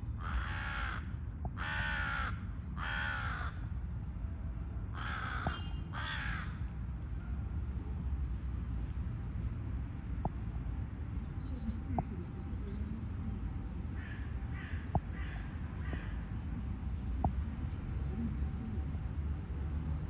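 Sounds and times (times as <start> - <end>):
steady low rumble: 0.0 - 20.0
crow cawing: 0.2 - 3.6, 5.0 - 6.6, 14.0 - 16.2.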